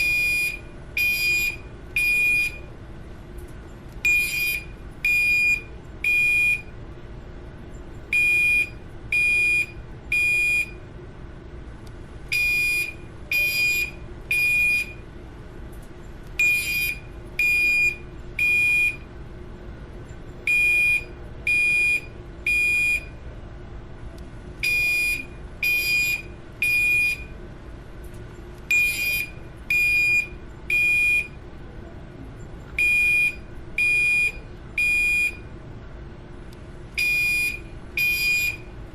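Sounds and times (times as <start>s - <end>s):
fire alarm horn beeping: 0.0s - 2.8s, 4.0s - 6.8s, 8.1s - 10.8s, 12.3s - 15.1s, 16.4s - 19.1s, 20.4s - 23.2s, 24.6s - 27.4s, 28.7s - 31.4s, 32.8s - 35.6s, 36.9s - 38.8s.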